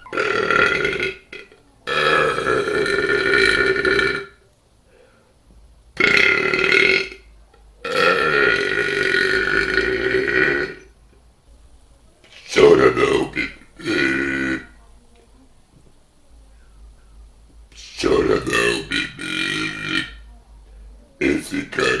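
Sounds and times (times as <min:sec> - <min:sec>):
man belching loudly: 0:00.0 - 0:04.4, 0:06.0 - 0:10.9, 0:12.5 - 0:14.7, 0:17.8 - 0:20.3, 0:21.2 - 0:22.0.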